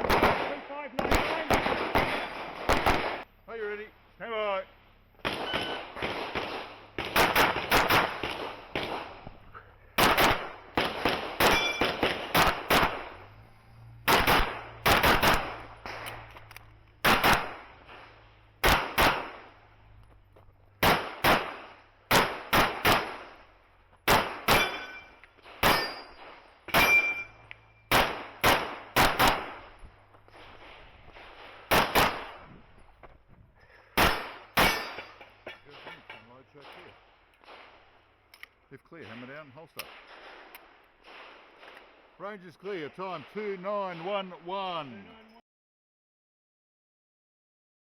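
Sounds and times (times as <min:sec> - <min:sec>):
pistol shots: 0:00.0 - 0:03.3, 0:05.2 - 0:20.0, 0:20.8 - 0:32.5, 0:33.9 - 0:38.0, 0:39.0 - 0:42.1
steel target metallic ring: 0:11.5 - 0:12.0, 0:24.5 - 0:27.9, 0:34.6 - 0:36.3.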